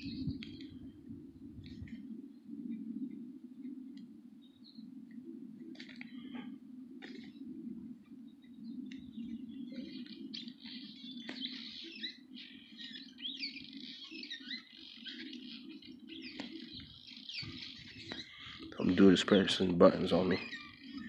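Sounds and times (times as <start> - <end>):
birds chirping: 0.0 - 21.0
steady low hum: 0.0 - 21.0.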